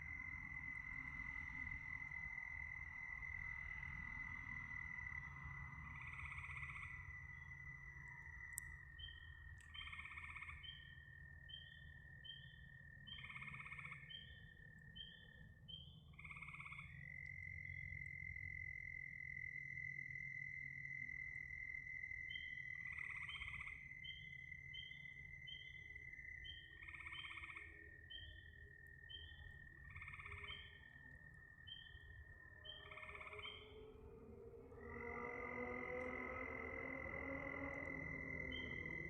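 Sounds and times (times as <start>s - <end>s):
frogs calling: 0.0s - 39.0s
low hum: 32.0s - 39.0s.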